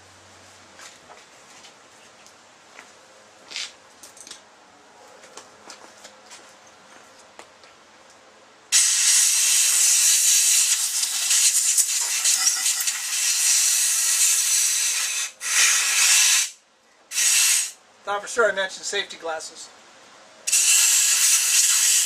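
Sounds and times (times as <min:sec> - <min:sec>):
compressed air hissing: 0:08.7 - 0:17.8, 0:20.5 - 0:22.0.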